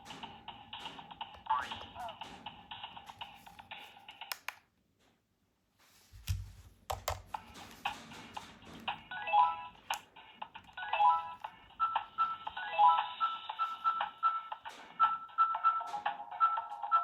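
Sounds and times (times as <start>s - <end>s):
sharp clicks: 4.1s - 4.6s.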